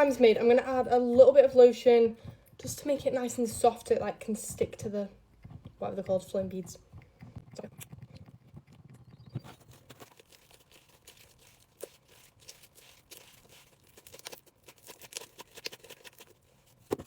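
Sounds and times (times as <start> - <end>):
slime kneaded by hand: 9.4 - 17.0.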